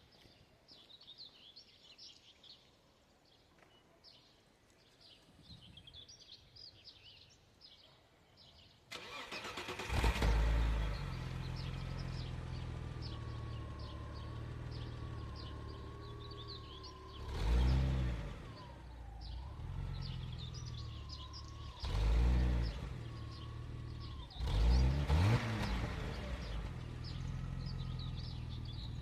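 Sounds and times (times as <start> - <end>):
birds chirping: 0.0 - 29.0
car engine idling: 9.0 - 29.0.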